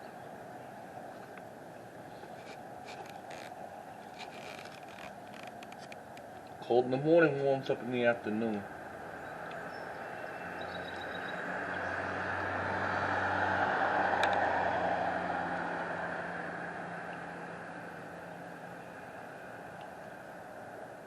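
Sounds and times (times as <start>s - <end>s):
vehicle driving past: 8.6s - 21.0s.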